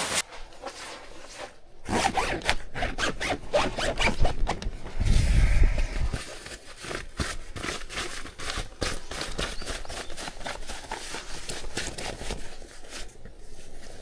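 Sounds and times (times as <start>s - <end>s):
short low rumble: 4.9s - 6.2s.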